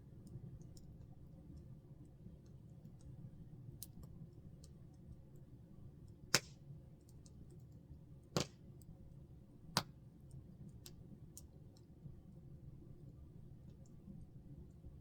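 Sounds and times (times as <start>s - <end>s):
fire pops: 8.4s - 8.6s.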